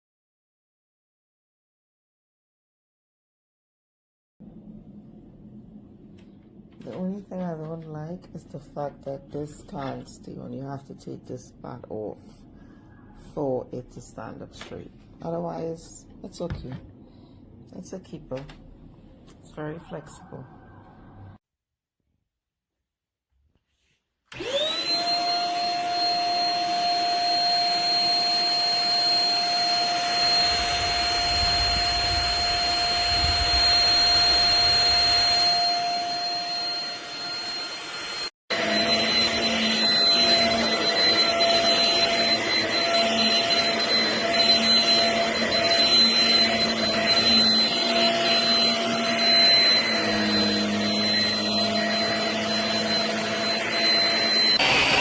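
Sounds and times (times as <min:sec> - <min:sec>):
vacuum cleaner whine: 0:24.3 - 0:55.0.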